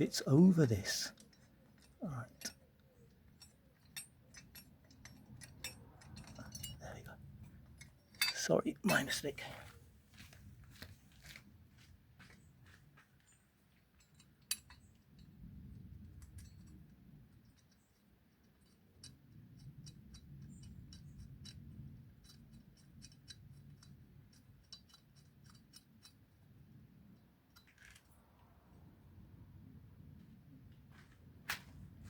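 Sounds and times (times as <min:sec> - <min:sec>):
metallic clicks of hand tools: 0:01.2 - 0:06.8, 0:14.0 - 0:15.3, 0:18.4 - 0:26.3.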